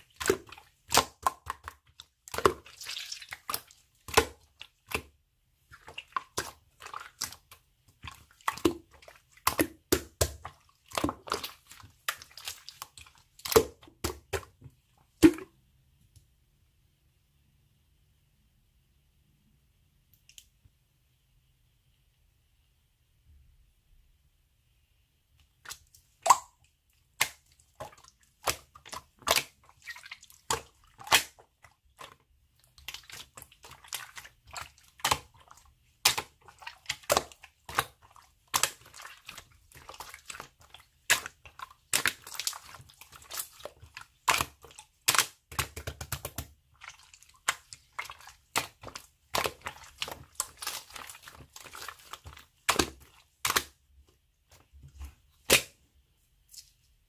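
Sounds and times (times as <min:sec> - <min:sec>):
slime squishing and popping: 0:32.7 - 0:53.8.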